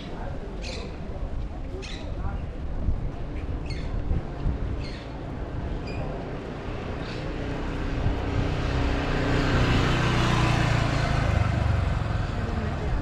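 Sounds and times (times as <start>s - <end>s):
motor vehicle passing: 5.4s - 13.0s.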